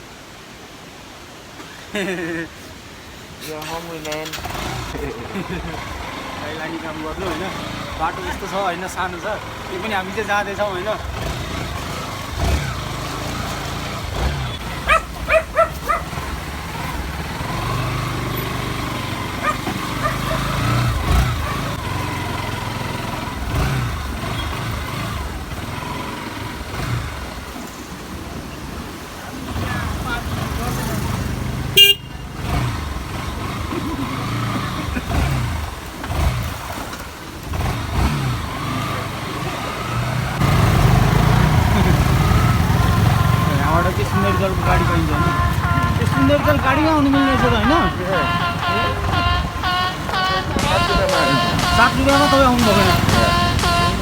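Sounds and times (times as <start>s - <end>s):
wind and road noise: 0.0s - 54.0s
vehicle engine humming: 3.2s - 54.0s
dog barking: 14.8s - 16.3s, 19.4s - 21.8s.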